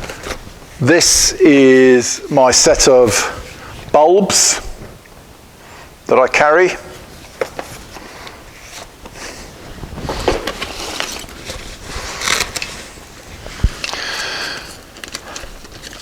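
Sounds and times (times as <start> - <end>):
tool kit rustling and scraping: 6.9 - 16.0.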